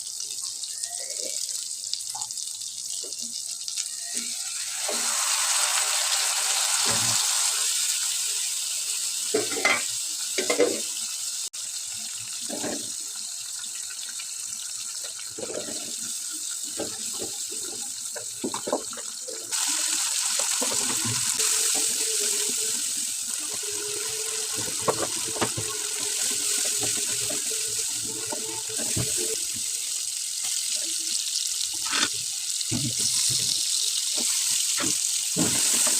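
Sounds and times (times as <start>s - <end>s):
tap water running into sink: 6.4s - 7.3s, 14.9s - 29.8s, 31.7s - 35.9s.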